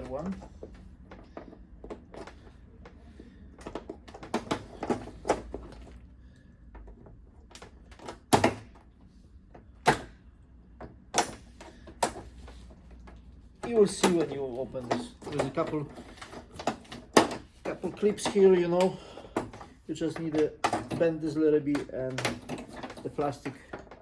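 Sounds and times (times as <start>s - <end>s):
hard plastic clicks and knocks: 10.8s - 24.0s.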